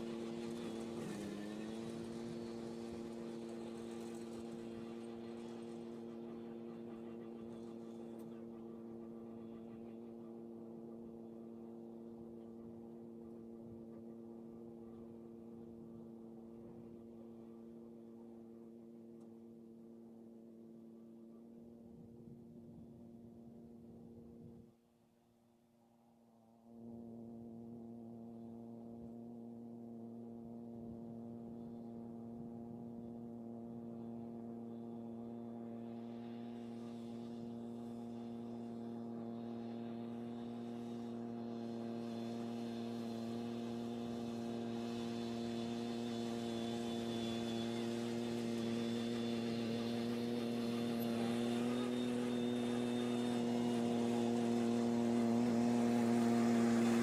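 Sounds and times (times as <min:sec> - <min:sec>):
steady machine drone: 0:00.0 - 0:12.8, 0:31.3 - 0:57.0.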